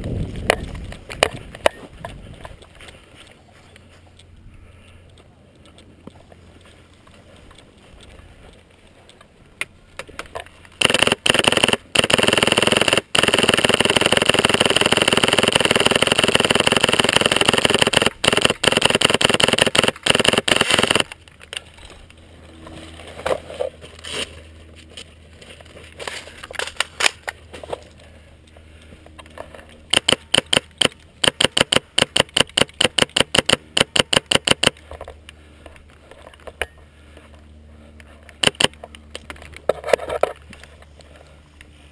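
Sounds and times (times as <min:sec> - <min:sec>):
airsoft rifle rapid shots: 0:10.8 - 0:21.2, 0:29.9 - 0:34.8, 0:38.4 - 0:38.8.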